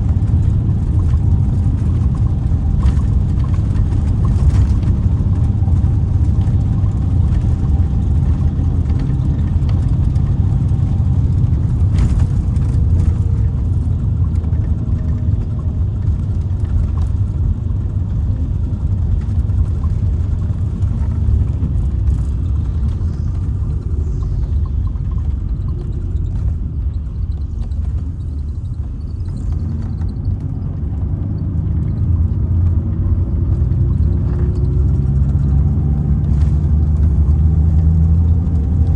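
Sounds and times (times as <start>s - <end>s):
diesel engine rumbling: 0.0s - 38.9s.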